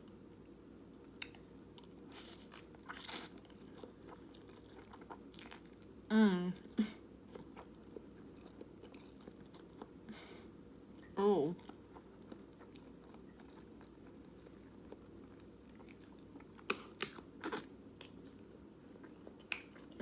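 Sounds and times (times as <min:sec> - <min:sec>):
person chewing noodles: 0:01.2 - 0:06.0, 0:07.2 - 0:10.0, 0:11.6 - 0:18.4.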